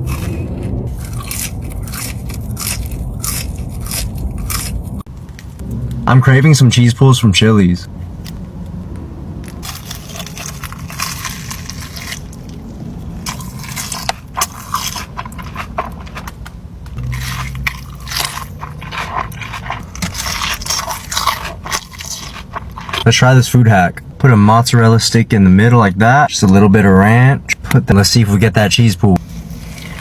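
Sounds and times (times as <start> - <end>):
crunching and chewing food: 0.0 - 6.0, 9.4 - 23.6, 29.2 - 30.0
food containers scraping: 9.5 - 23.2.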